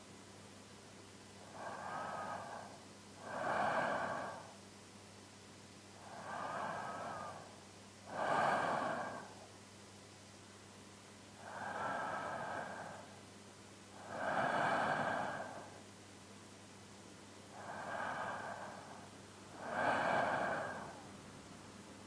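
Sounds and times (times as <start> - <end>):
man breathing deeply: 1.4 - 4.6, 6.0 - 9.5, 11.4 - 13.2, 14.0 - 15.8, 17.5 - 21.1.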